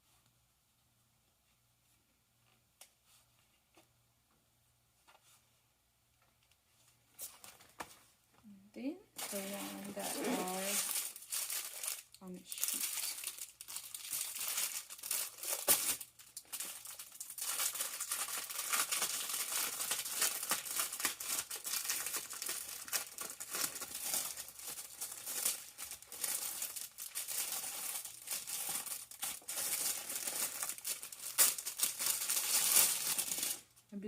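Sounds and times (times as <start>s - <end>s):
plastic packaging crinkling: 9.2s - 33.8s.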